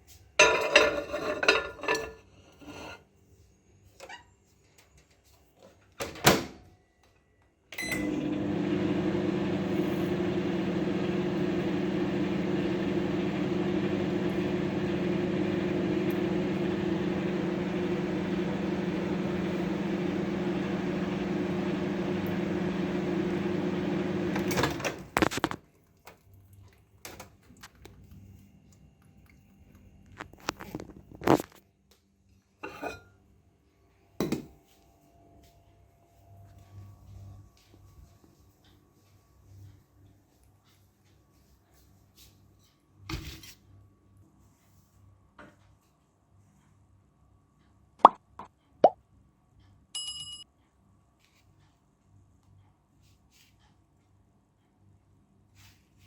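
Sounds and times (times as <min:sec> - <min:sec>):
microwave oven humming: 0:07.7 - 0:25.6.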